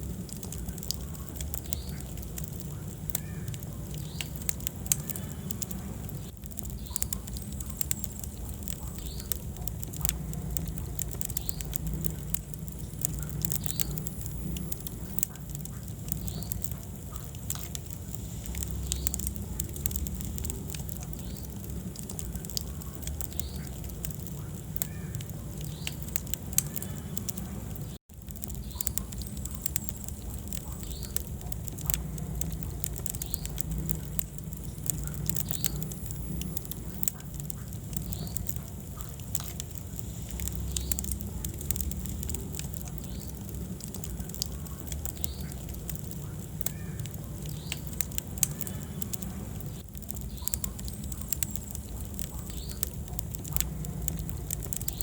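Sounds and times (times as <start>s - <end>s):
fire crackles and pops: 0.0s - 55.0s
low rumble of flames: 0.0s - 55.0s.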